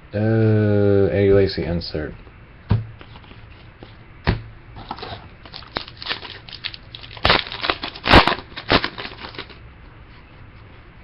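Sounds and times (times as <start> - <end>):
cards handled: 3.0 - 4.0, 4.8 - 9.6
foil wrapper crinkling and tearing: 4.8 - 9.6.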